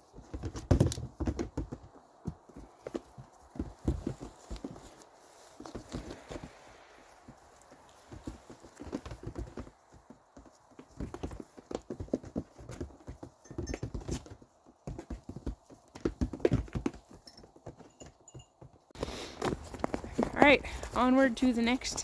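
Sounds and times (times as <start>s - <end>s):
horse hooves clip-clopping: 0.0s - 22.0s.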